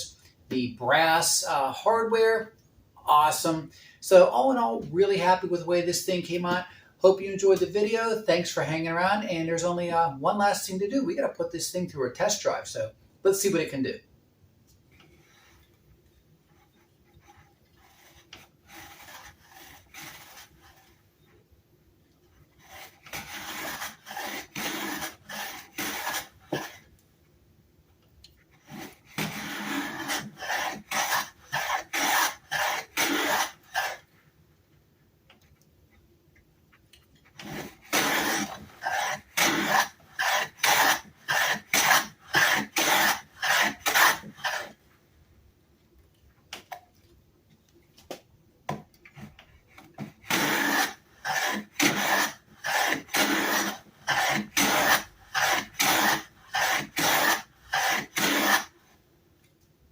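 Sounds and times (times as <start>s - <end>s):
hand plane rasping on wood: 17.2s - 20.9s, 22.6s - 26.8s, 28.6s - 34.1s, 37.4s - 44.8s, 50.0s - 58.7s.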